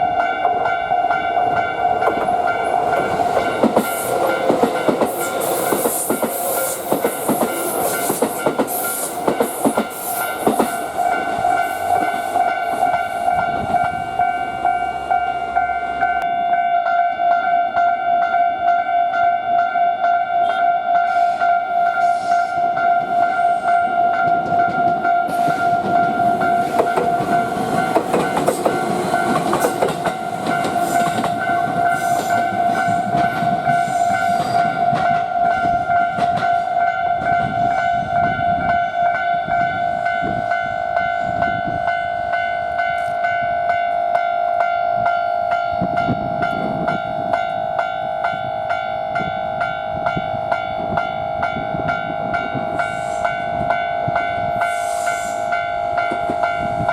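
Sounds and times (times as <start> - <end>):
level crossing warning bell: 0.0 - 56.9
train wheels clicking over rail joints: 1.3 - 13.8, 23.0 - 36.6, 52.3 - 56.9.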